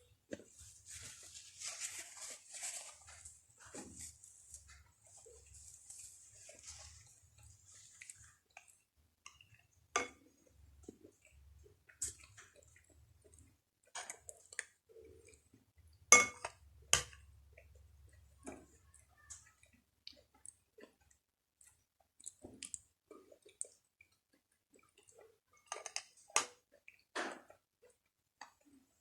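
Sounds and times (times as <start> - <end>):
moist chewing: 0.3 - 9.7, 10.4 - 15.6.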